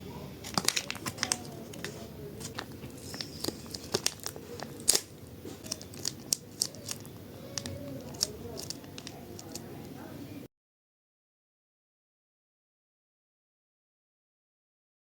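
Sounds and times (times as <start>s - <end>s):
plastic packaging tearing and crinkling: 0.4s - 9.7s.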